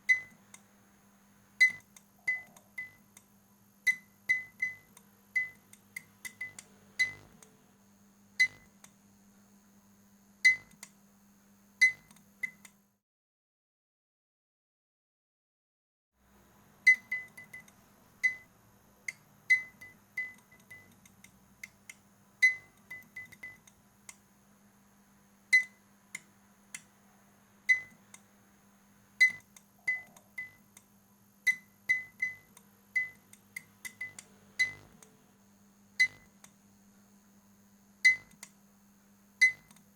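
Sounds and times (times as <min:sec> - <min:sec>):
steady low hum: 0:00.0 - 0:12.6, 0:16.2 - 0:39.9
fluorescent lamp clicking: 0:03.9 - 0:07.6, 0:16.9 - 0:18.5, 0:19.1 - 0:24.3, 0:25.6 - 0:26.9, 0:31.5 - 0:35.1, 0:38.1 - 0:38.6.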